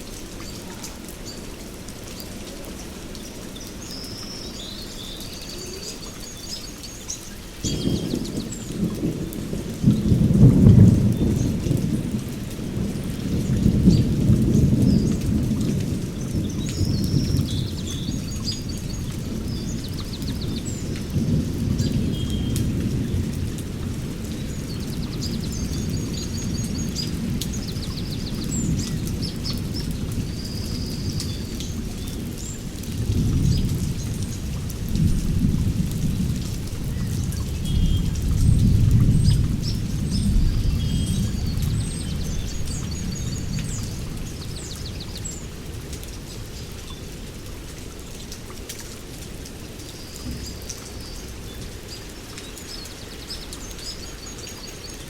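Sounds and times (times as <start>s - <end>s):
steady rain: 0.0s - 55.0s
thunder rolling: 7.6s - 17.8s.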